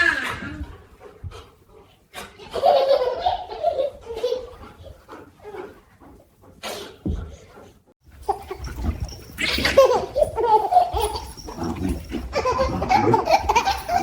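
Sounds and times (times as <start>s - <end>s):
baby giggling: 2.5s - 4.6s, 8.2s - 14.0s.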